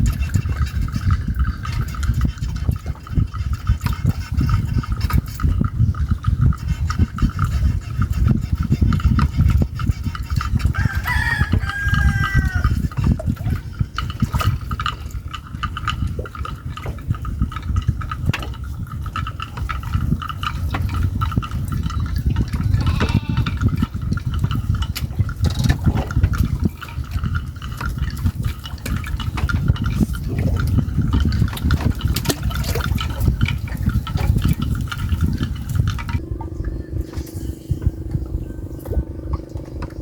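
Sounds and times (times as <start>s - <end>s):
wind: 0.0s - 40.0s
rooster crowing: 10.8s - 12.7s.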